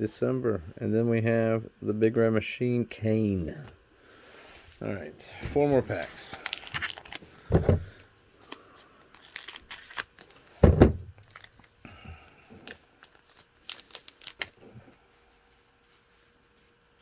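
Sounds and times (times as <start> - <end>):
wrapper crinkling: 5.5 - 7.5, 8.4 - 10.6, 11.2 - 17.0
dull thuds of handling: 7.5 - 8.0, 10.6 - 11.2.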